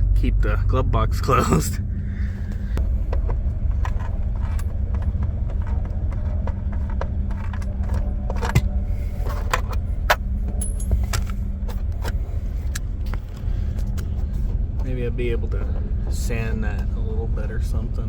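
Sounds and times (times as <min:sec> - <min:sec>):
low rumble and hum: 0:00.0 - 0:18.0
hard parts clicking and knocking: 0:02.8 - 0:14.1.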